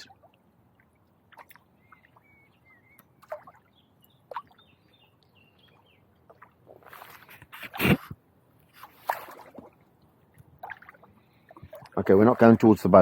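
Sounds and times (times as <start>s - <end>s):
paddle splashing: 0.0s - 4.8s, 5.6s - 13.0s.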